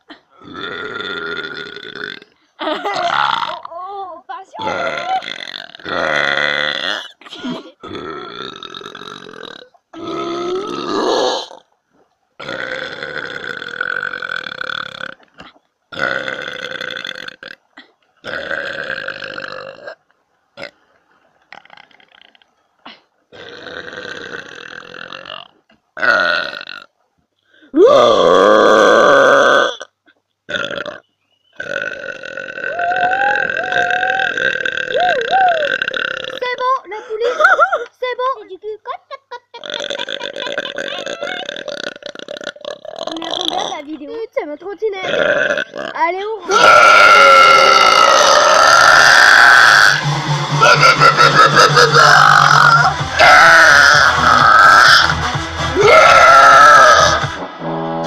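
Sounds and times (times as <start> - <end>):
woman burping loudly: 0.0 - 11.7, 12.4 - 20.0, 20.6 - 20.8, 21.5 - 26.9, 27.7 - 31.0, 31.6 - 37.9, 39.1 - 43.9, 45.0 - 50.0, 50.6 - 57.2.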